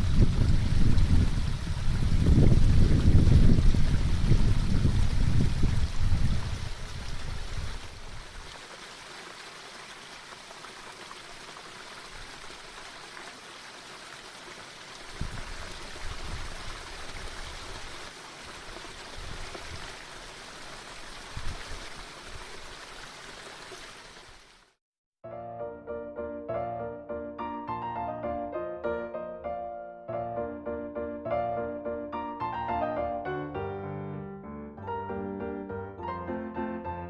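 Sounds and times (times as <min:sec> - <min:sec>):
wind gusts on microphone: 0:00.0 - 0:08.5, 0:15.1 - 0:18.0, 0:19.0 - 0:20.0, 0:21.1 - 0:22.5
stream rushing: 0:00.0 - 0:24.7
piano music: 0:25.2 - 0:37.0.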